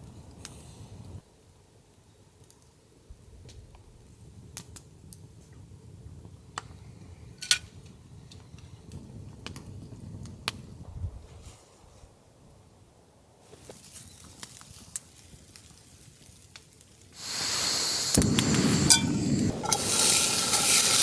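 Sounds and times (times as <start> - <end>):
campfire crackling and popping: 14.5 - 21.0
low rumble: 18.2 - 21.0.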